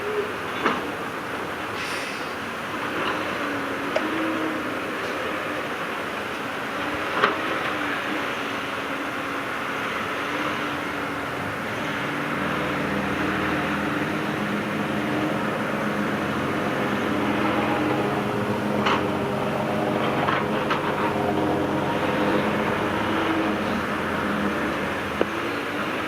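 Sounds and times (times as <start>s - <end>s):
diesel engine running: 0.0s - 26.0s.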